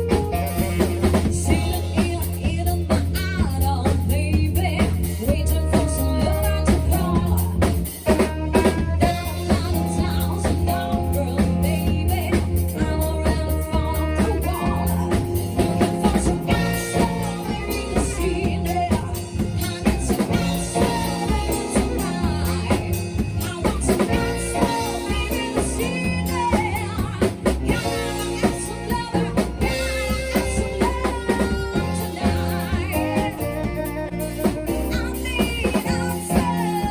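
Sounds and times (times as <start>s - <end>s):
band playing a song: 0.0s - 36.9s
person singing: 8.5s - 36.9s.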